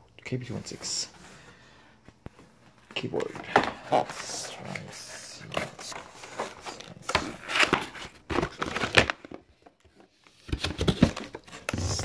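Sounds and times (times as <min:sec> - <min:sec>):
plastic packaging crinkling: 0:02.9 - 0:09.7.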